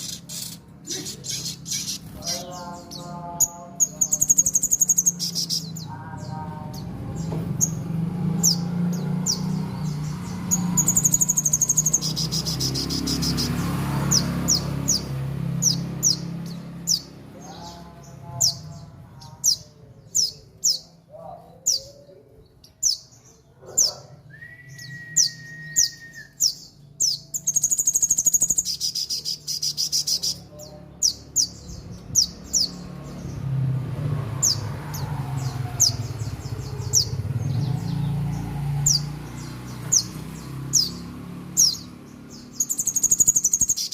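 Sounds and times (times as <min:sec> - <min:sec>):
bird chips: 0:00.0 - 0:03.0
buzzy bird trills: 0:00.0 - 0:13.6.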